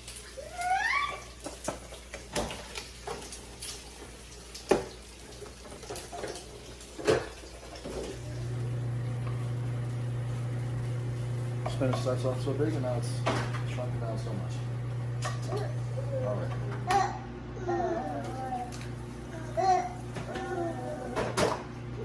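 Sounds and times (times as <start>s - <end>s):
low appliance hum: 0.0s - 22.0s.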